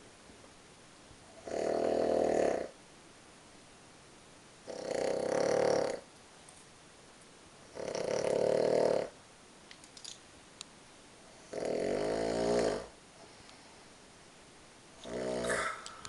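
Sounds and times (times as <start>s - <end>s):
person snoring: 1.4s - 2.7s, 4.7s - 6.0s, 7.8s - 9.2s, 11.4s - 12.9s, 15.0s - 16.0s.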